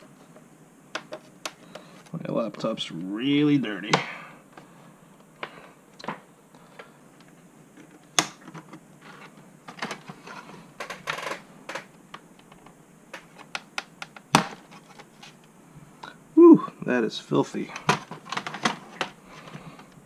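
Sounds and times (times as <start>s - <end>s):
plastic case clicks and scrapes: 17.8s - 20.0s.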